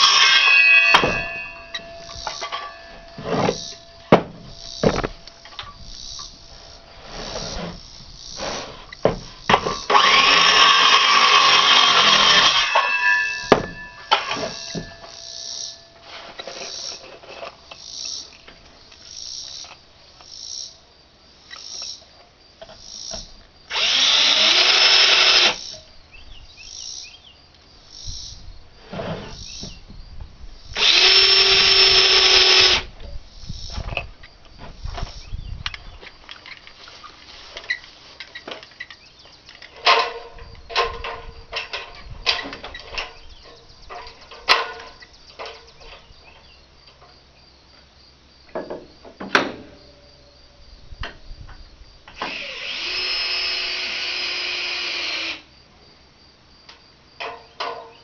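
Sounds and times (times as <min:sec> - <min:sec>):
knocks and handling clatter: 0:00.0 - 0:06.4, 0:11.6 - 0:18.7, 0:33.0 - 0:47.2
power drill running: 0:09.7 - 0:12.9, 0:23.7 - 0:25.6, 0:30.8 - 0:32.8, 0:52.2 - 0:55.4.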